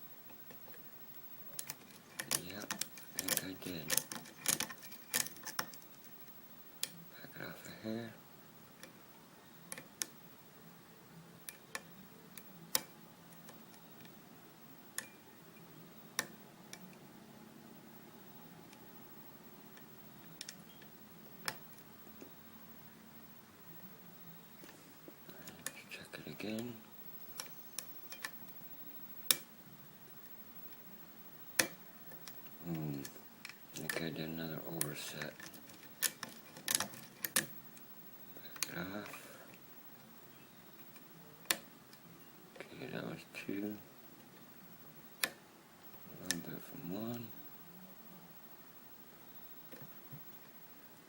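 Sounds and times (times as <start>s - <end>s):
lock pick metallic clicks: 1.6s - 5.8s.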